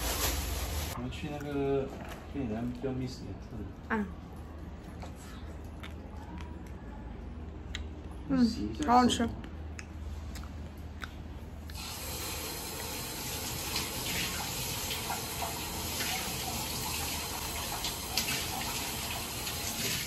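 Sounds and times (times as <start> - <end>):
tap water running into sink: 11.8 - 20.0.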